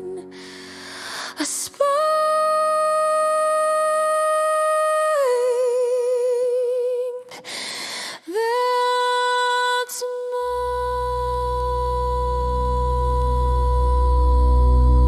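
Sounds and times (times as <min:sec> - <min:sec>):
woman singing wordless note: 0:08.3 - 0:15.0
low drone: 0:10.5 - 0:15.0.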